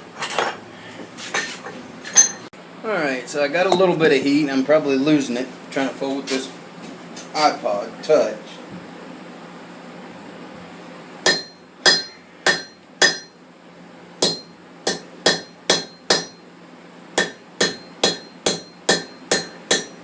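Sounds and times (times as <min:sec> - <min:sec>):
hammer ringing on hot steel: 0:11.2 - 0:13.4, 0:14.2 - 0:16.5, 0:17.2 - 0:20.0.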